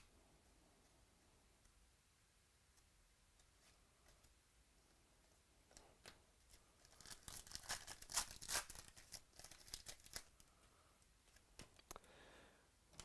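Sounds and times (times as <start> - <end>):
card pack wrapper tearing and crinkling: 6.8 - 10.4.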